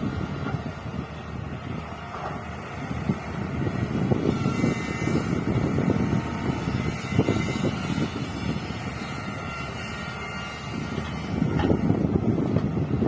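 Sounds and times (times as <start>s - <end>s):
excavator diesel engine rumbling: 0.0s - 13.0s.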